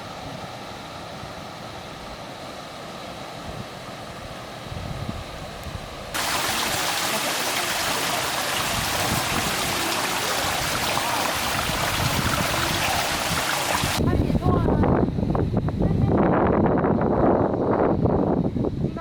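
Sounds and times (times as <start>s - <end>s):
rushing water: 6.2s - 14.0s.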